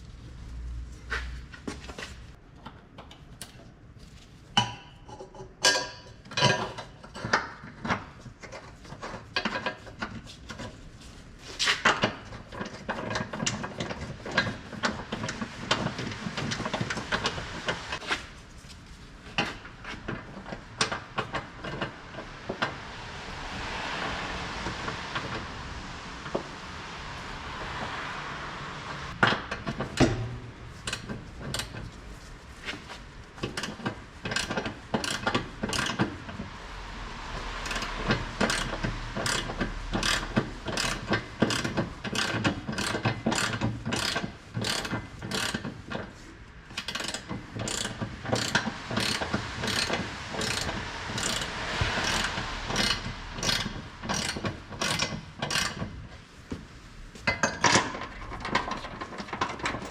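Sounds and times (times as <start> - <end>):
ratchet wrench clicking: 30.8 - 31.7, 33.6 - 36.0, 37.6 - 45.7, 46.7 - 55.9.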